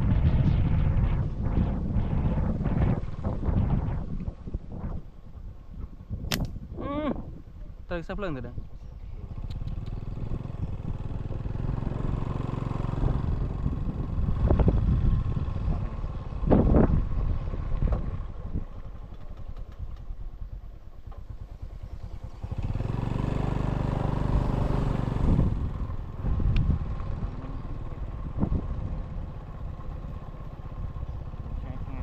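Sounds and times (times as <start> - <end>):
small motorcycle engine running: 8.7 - 32.0.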